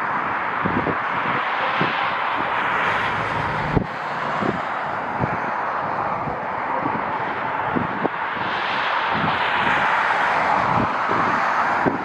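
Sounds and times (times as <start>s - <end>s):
wind gusting on microphone: 0.0s - 12.0s.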